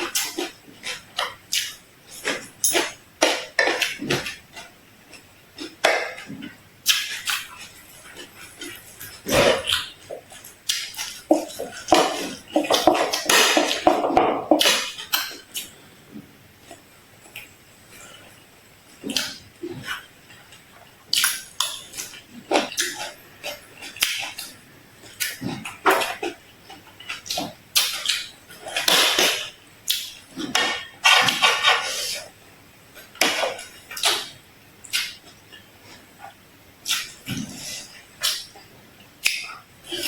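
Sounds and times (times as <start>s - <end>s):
crunchy wet chewing: 0.0s - 40.0s
utensils and dishes clattering: 2.1s - 4.4s, 11.1s - 15.4s.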